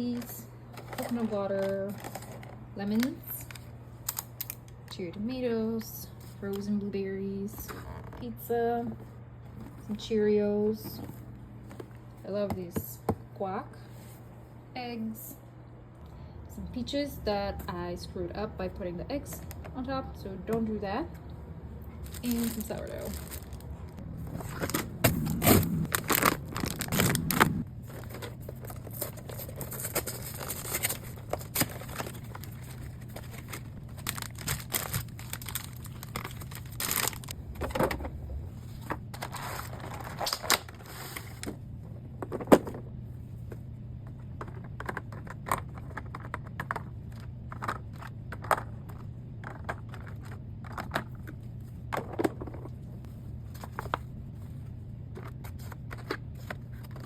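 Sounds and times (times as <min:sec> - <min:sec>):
low steady hum: 0:00.0 - 0:57.0
plastic packaging crinkling: 0:21.9 - 0:37.4.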